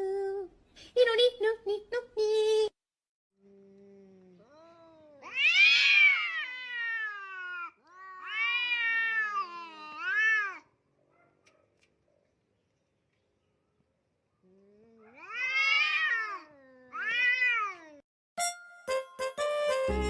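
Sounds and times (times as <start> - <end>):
faint low moan: 3.4 - 5.3
cat yowling: 4.4 - 10.7, 14.8 - 18.0.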